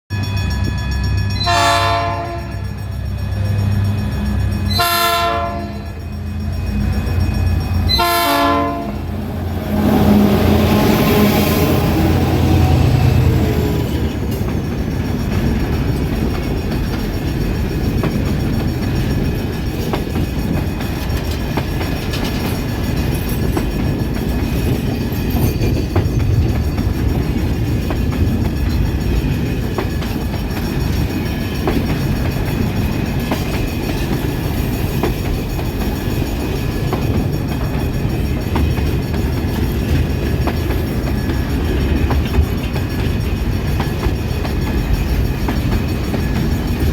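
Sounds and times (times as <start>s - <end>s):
diesel locomotive engines running: 0.3s - 46.9s
train wheels clickety-clack: 0.5s - 46.9s
train horn: 1.4s - 2.8s, 4.7s - 6.0s, 7.9s - 13.3s.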